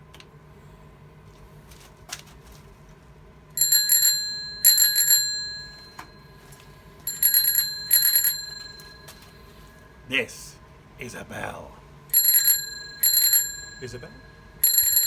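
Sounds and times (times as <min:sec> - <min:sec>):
bicycle bell trills: 0:03.6 - 0:06.3, 0:07.1 - 0:09.4, 0:12.1 - 0:15.0.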